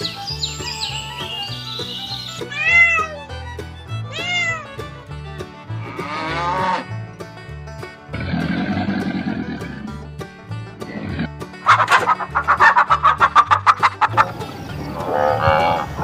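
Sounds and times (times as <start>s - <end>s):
background music with bass line: 0.0s - 16.0s
cat meowing: 2.4s - 3.3s, 4.1s - 4.8s.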